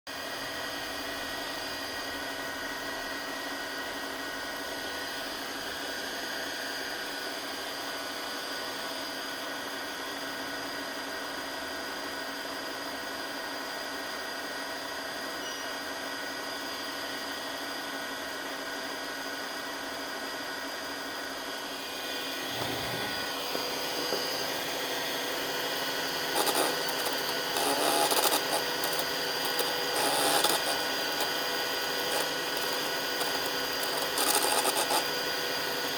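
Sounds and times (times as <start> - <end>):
small motor whining: 21.7 - 35.9.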